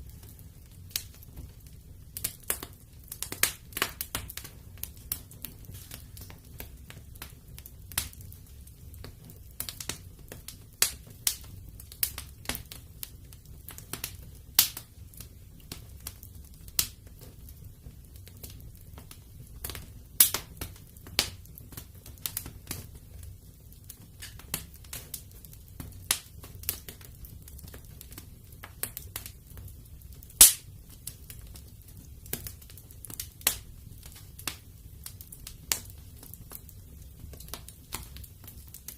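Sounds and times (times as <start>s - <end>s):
fire crackling and popping: 0.0s - 38.9s
low rumble of flames: 0.0s - 38.9s.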